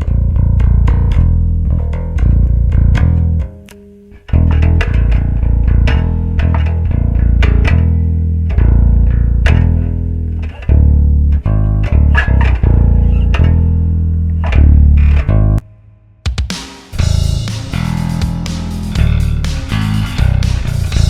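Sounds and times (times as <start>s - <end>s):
electric bass plucked notes: 0.0s - 15.7s, 16.9s - 21.0s.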